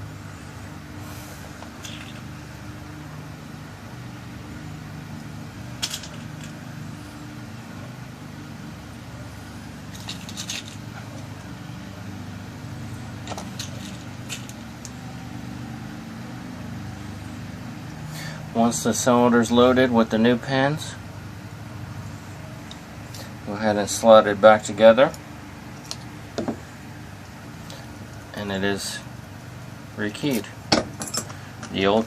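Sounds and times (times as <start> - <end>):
steady low hum: 0.0 - 32.0.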